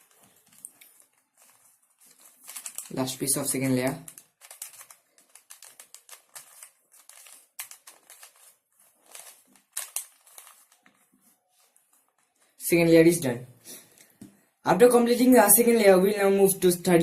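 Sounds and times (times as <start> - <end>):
puzzle cube clicking and rattling: 0.0 - 11.0.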